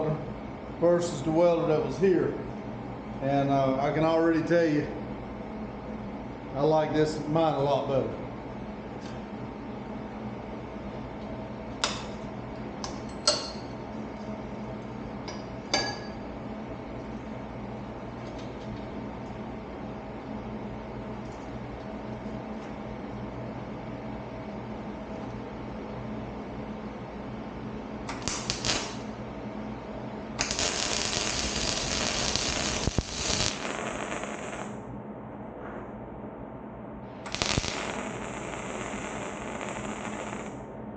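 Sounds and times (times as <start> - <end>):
steady hum: 0.0 - 40.9
arc welder crackling: 11.1 - 15.6, 28.0 - 29.3, 30.3 - 34.8, 37.1 - 40.7.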